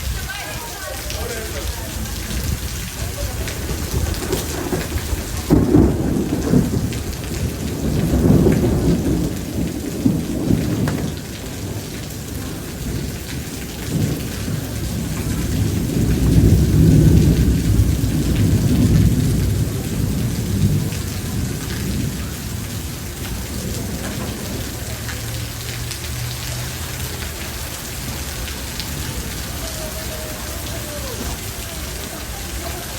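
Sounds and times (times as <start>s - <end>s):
thunder clap: 0.0s - 26.1s
rain falling steadily: 0.0s - 32.9s
thunder rumbling: 0.0s - 32.9s.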